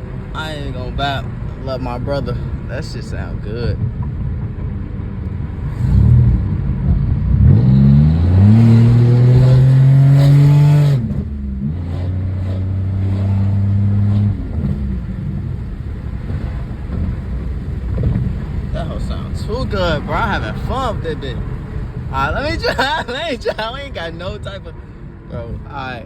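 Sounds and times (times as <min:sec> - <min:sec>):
car engine revving: 0:00.0 - 0:26.0.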